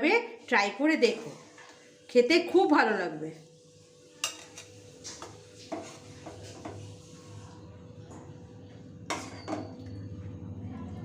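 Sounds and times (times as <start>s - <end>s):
utensils clinking on dishes: 4.2s - 6.8s, 9.1s - 10.0s.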